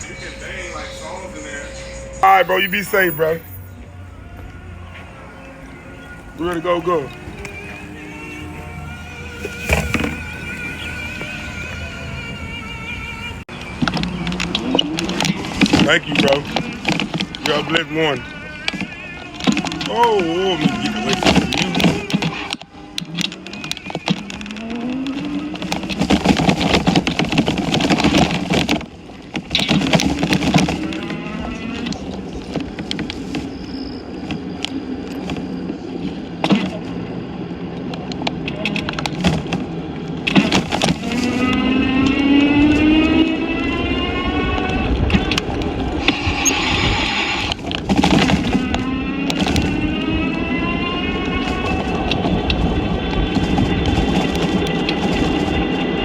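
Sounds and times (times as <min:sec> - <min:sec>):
car engine accelerating: 0:00.0 - 0:33.2, 0:34.5 - 0:56.0
road noise inside car: 0:00.0 - 0:56.0.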